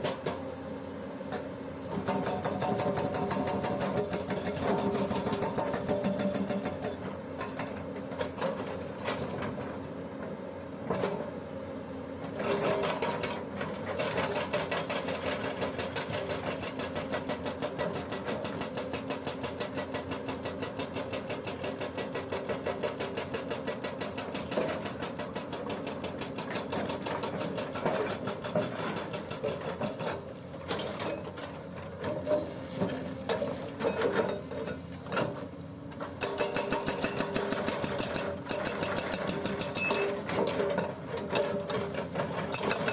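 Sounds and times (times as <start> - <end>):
hydraulic breaker hammering: 36.2 - 40.6, 42.3 - 42.9.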